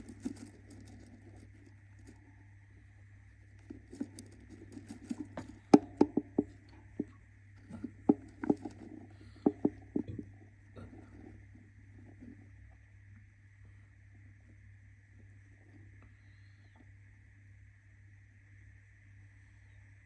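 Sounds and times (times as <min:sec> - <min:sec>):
bird scratching and shuffling: 0:00.0 - 0:12.8.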